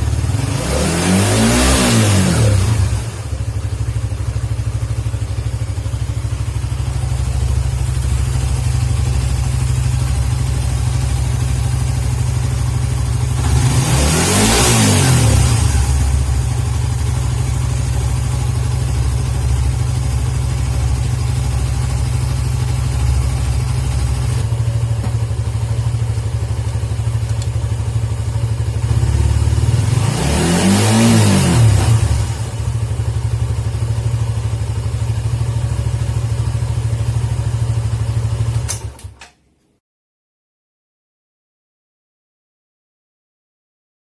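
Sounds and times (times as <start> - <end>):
motorcycle engine idling: 0.0 - 0.5, 2.8 - 13.8, 15.6 - 29.9, 32.2 - 39.0.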